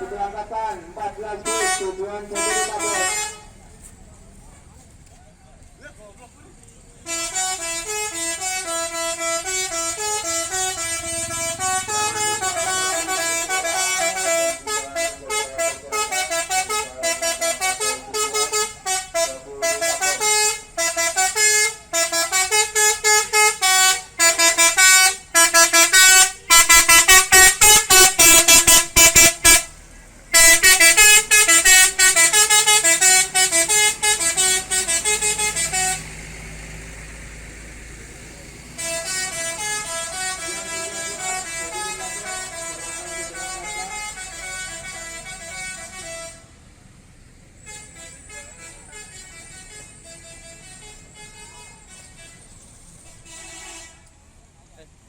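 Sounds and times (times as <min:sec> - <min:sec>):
multi-tone air horn melody: 0:01.0 - 0:03.6, 0:07.0 - 0:36.8, 0:38.7 - 0:46.5, 0:47.6 - 0:52.5, 0:53.1 - 0:54.1.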